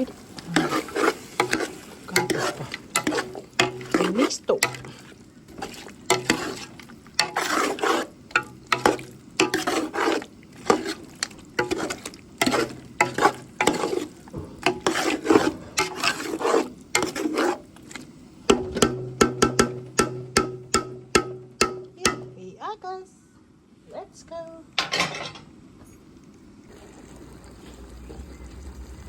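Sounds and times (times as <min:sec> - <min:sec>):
faint sizzle: 0:00.0 - 0:20.7, 0:21.4 - 0:29.0
utensil scraping cooking pan: 0:00.0 - 0:22.3.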